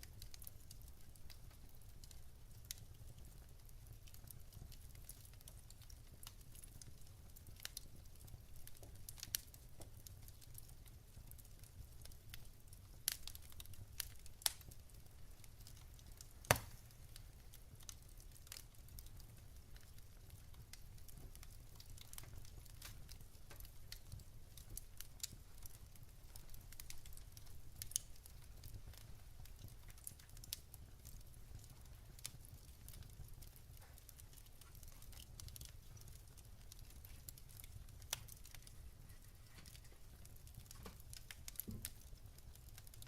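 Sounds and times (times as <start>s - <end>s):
wood fire crackling and popping: 0.0s - 43.0s.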